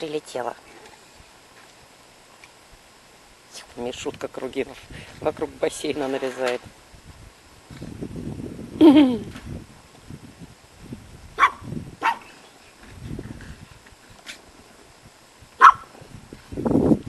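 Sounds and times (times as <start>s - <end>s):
small dog yapping: 11.4s - 12.4s, 15.6s - 15.9s.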